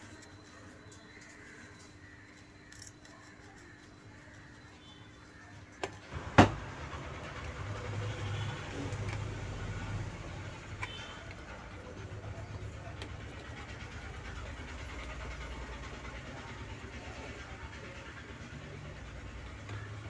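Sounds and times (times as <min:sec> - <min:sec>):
sharp knock: 0:06.4 - 0:06.6.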